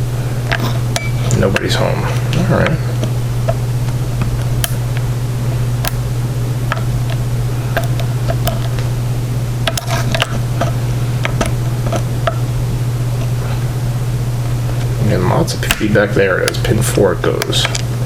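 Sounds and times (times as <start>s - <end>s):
steady low hum: 0.0s - 18.0s
lock pick clicking and scraping: 4.6s - 4.8s, 5.8s - 6.0s, 7.8s - 8.8s, 9.7s - 10.4s.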